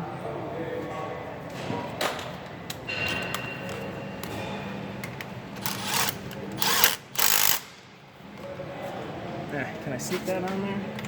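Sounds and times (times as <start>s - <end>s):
metal tools clicking and scraping: 5.0s - 7.7s.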